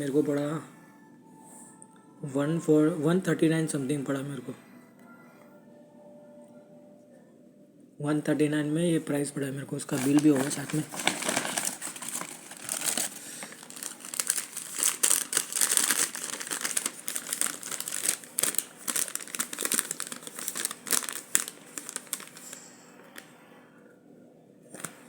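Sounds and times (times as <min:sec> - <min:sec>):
packaging crinkling and rustling: 0:09.9 - 0:22.6.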